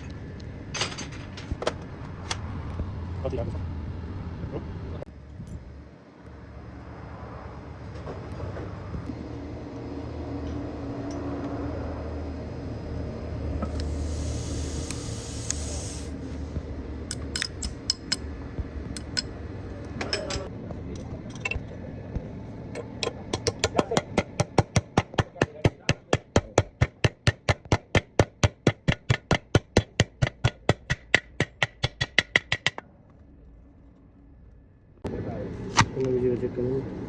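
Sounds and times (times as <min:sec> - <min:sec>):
short hiss: 0:13.8 - 0:16.2
hammer striking metal: 0:17.1 - 0:18.3, 0:22.8 - 0:32.8.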